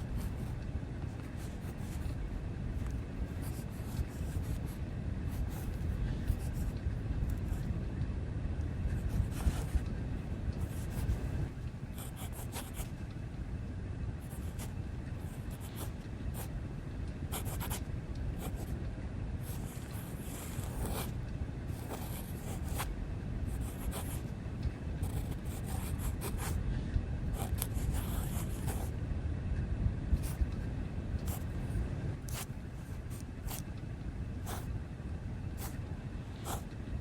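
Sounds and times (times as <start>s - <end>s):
pen scratching on paper: 0.0s - 7.7s, 8.9s - 9.9s, 10.6s - 13.0s, 14.2s - 16.5s, 17.3s - 18.8s, 19.4s - 24.3s, 24.9s - 26.6s, 27.3s - 28.9s, 30.2s - 30.5s, 31.2s - 33.8s, 34.4s - 34.8s, 35.5s - 36.7s
low background rumble: 0.0s - 37.0s.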